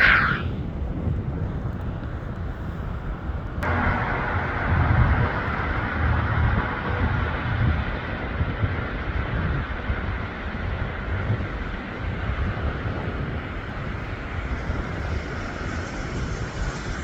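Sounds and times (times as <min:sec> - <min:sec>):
wind rumble on microphone: 0:00.0 - 0:17.0
turboprop engines running up: 0:03.6 - 0:17.0.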